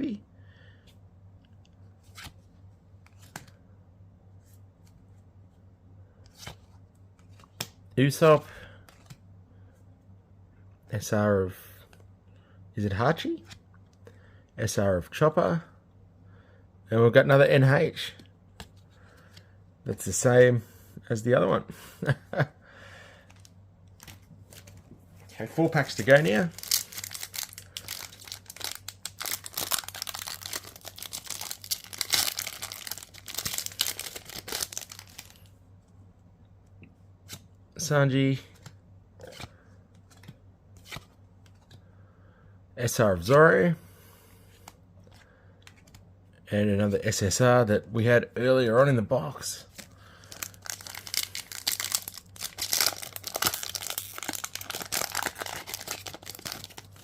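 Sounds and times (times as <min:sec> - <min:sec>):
foil wrapper crinkling and tearing: 0:25.7 - 0:35.4, 0:50.2 - 0:57.0.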